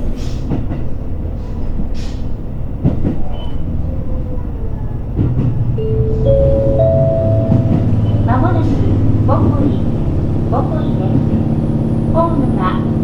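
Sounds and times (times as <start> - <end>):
railcar interior low rumble: 0.0 - 13.0
wheels knocking on rail joints: 5.0 - 13.0
steady high tone: 5.8 - 9.0.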